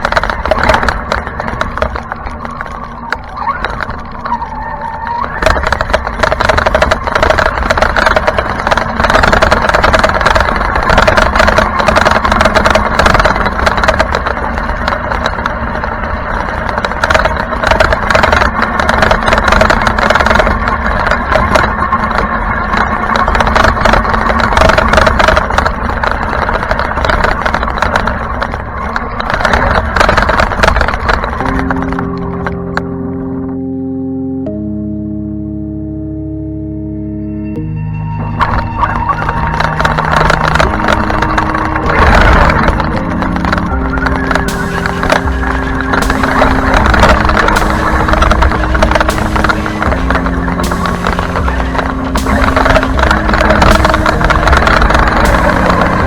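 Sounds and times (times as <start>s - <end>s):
tyres on dirt: 0.0s - 33.1s, 38.4s - 56.0s
chassis clicks and rattles: 0.0s - 33.6s, 38.3s - 56.0s
rc truck motor revving: 38.6s - 56.0s.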